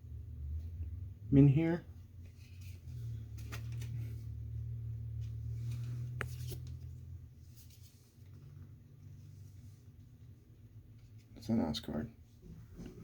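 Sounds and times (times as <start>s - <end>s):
low steady hum: 0.0s - 13.0s
cards sliding and rustling: 2.2s - 4.4s, 5.2s - 8.4s.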